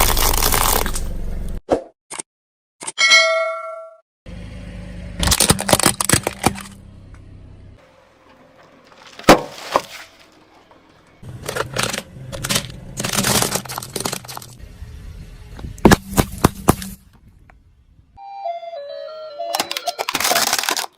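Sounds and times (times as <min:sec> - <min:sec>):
tyre crushing brittle objects: 0:00.0 - 0:01.0, 0:05.2 - 0:06.8, 0:08.6 - 0:14.6, 0:19.8 - 0:20.9.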